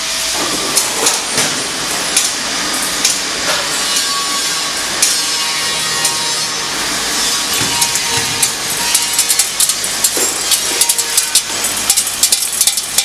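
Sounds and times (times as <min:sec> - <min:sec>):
packaging machine hissing: 0:06.5 - 0:13.0.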